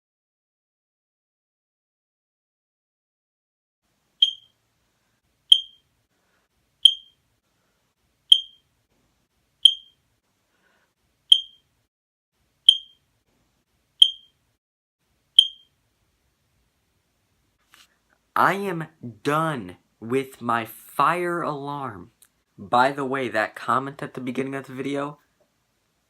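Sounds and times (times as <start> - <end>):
fire alarm chirping: 4.2 - 4.5, 5.5 - 5.8, 6.8 - 7.2, 8.3 - 8.6, 9.6 - 10.0, 11.3 - 11.7, 12.7 - 13.0, 14.0 - 14.4, 15.4 - 15.8.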